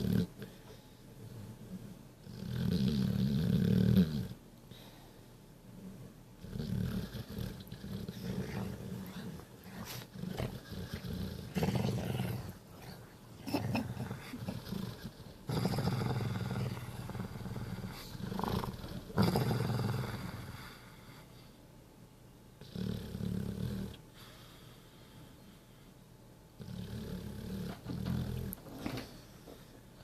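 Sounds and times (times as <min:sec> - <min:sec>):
dog snoring loudly: 0:00.0 - 0:00.6, 0:01.6 - 0:04.4, 0:06.4 - 0:20.7, 0:22.6 - 0:24.0, 0:26.6 - 0:29.0.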